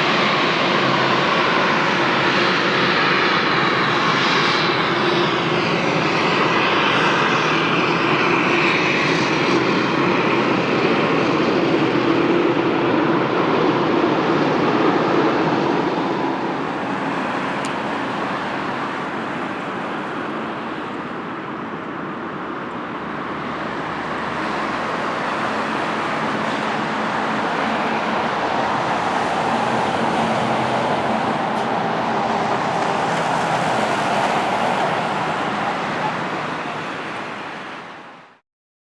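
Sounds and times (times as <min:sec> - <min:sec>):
jet engine rush: 0:00.0 - 0:38.2.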